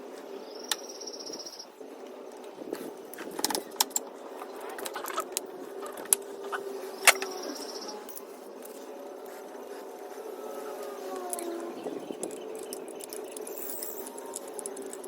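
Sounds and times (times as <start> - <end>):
low background hum: 0.0 - 15.0
metal tools clinking: 12.1 - 15.0.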